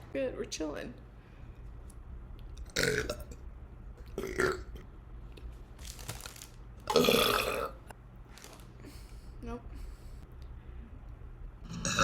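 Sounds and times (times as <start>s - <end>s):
woman burping: 6.9s - 7.8s.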